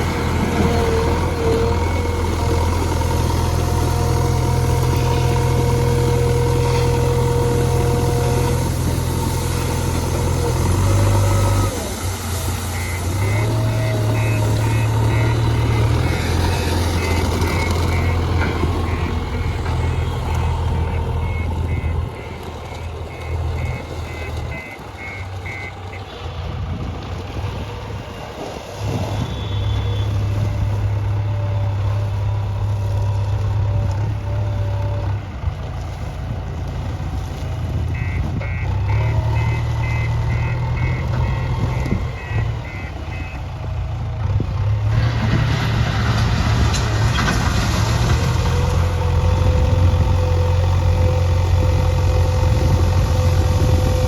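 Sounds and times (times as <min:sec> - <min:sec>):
diesel engine running: 0:00.0 - 0:54.0
reversing alarm beeping: 0:00.2 - 0:08.6, 0:09.2 - 0:26.3, 0:37.9 - 0:43.5.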